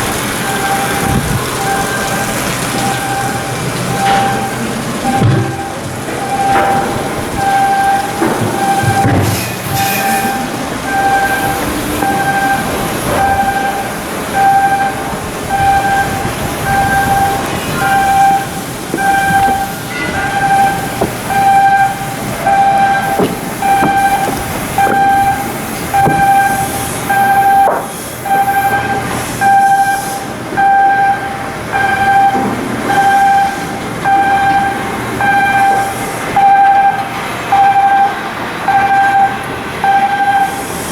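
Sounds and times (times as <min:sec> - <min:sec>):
workshop noise: 0:00.0 - 0:40.9
electronic warning beeps: 0:00.4 - 0:40.7
metal knocks: 0:16.9 - 0:26.7.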